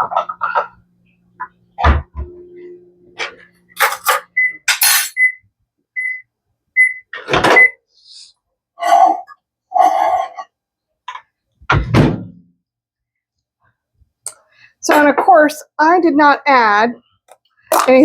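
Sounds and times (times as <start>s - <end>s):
microwave humming: 0.0s - 4.7s
microwave beeps: 3.7s - 7.8s
thunk: 11.7s - 12.4s.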